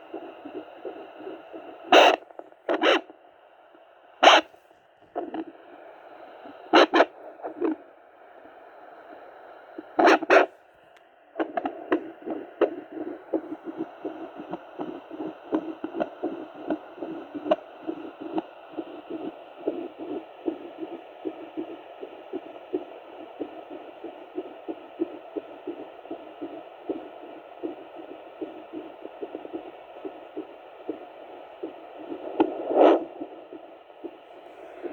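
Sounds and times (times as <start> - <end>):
steady hiss: 11.4 - 34.9.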